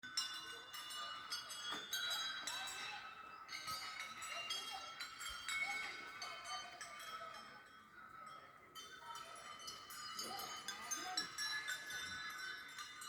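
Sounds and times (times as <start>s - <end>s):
temple bells ringing: 0.2s - 13.0s.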